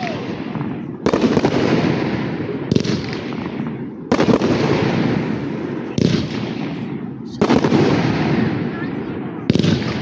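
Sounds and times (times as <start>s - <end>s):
dense fireworks crackle: 0.0s - 10.0s
fireworks bangs: 0.0s - 10.0s.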